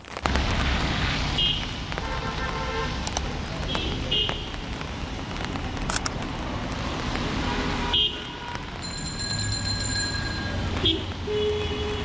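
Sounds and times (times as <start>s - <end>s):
city street traffic: 0.0s - 12.0s
steady rain: 0.0s - 12.0s.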